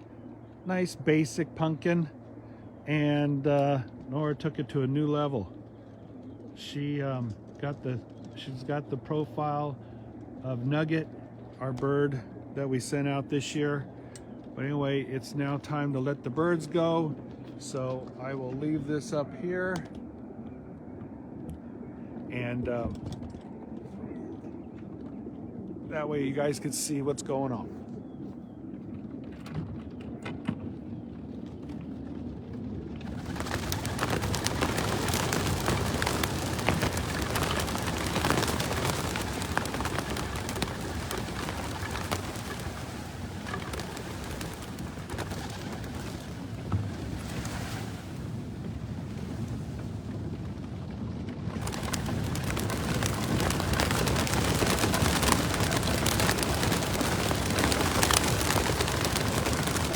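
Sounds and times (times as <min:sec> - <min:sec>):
pigeon wings flapping: 0:33.0 - 0:59.9.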